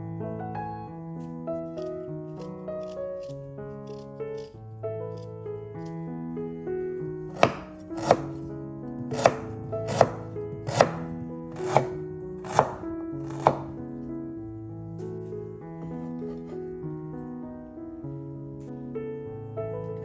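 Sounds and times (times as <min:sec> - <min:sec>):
soft piano music: 0:00.0 - 0:20.0
knife chopping on cutting board: 0:07.3 - 0:08.4, 0:09.0 - 0:13.8.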